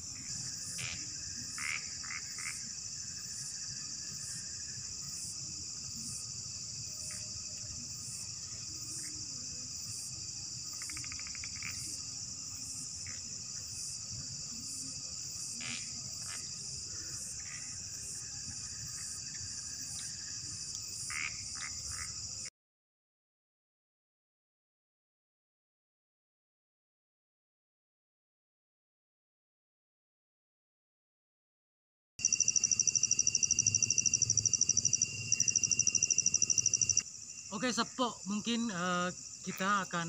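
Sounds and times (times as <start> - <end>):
high insect drone: 0.0 - 22.5, 32.2 - 40.0
regular pulsing insect call: 0.0 - 22.5, 32.2 - 40.0
frogs calling: 0.2 - 2.7, 10.7 - 12.0, 21.0 - 22.3, 32.2 - 38.0.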